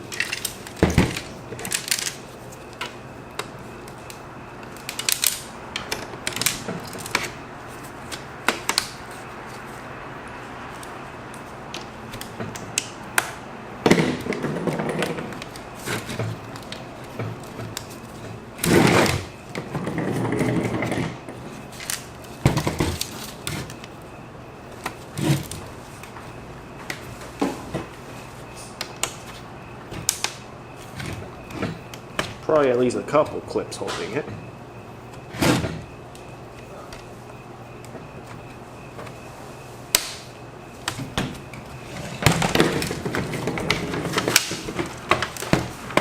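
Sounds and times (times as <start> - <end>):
plastic scraping against plastic: 14.0 - 23.8, 40.8 - 46.0.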